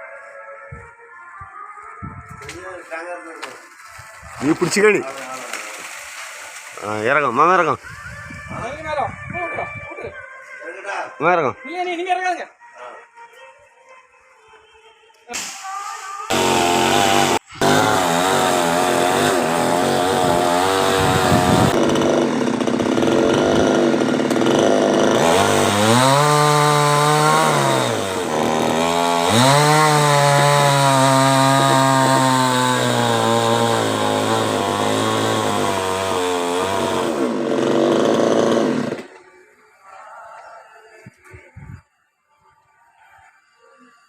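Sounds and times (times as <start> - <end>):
chainsaw cutting tree: 4.2 - 7.0, 16.3 - 39.2.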